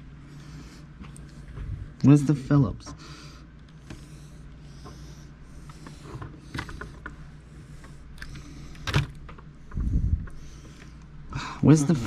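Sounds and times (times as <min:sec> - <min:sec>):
steady low hum: 0:00.0 - 0:12.0
heavy breathing: 0:02.8 - 0:12.0.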